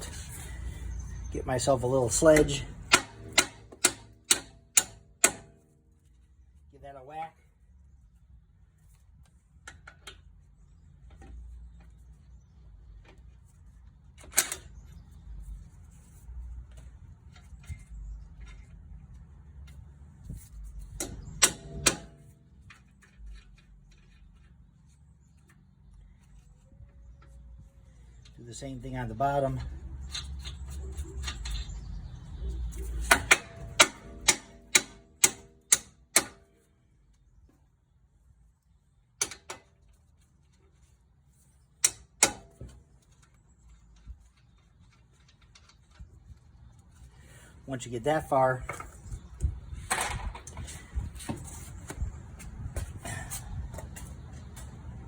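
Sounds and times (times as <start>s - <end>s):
sledgehammer striking steel nut: 2.8s - 5.6s, 21.0s - 22.3s, 33.1s - 36.5s.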